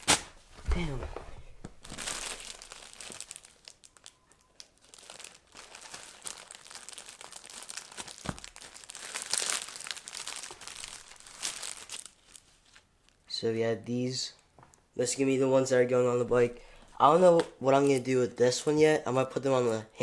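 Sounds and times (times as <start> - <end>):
plastic wrapping crinkling: 0.8 - 13.3.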